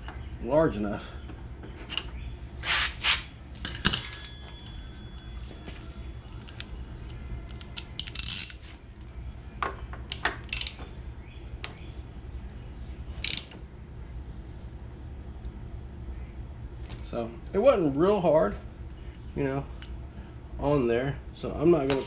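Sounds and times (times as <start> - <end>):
wrench clinking on metal nut: 3.6 - 5.8, 7.6 - 8.6, 10.1 - 10.9, 13.2 - 13.6.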